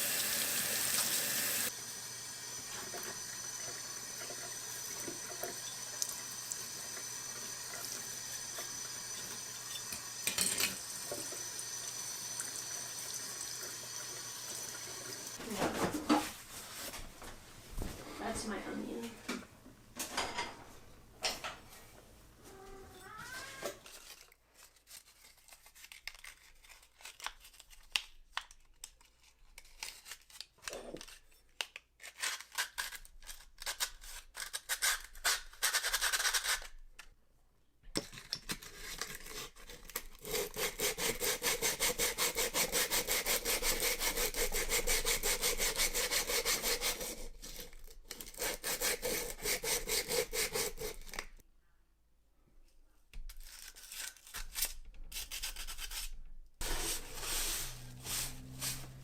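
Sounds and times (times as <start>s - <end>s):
hand rubbing strokes: 56.6s - 59.0s.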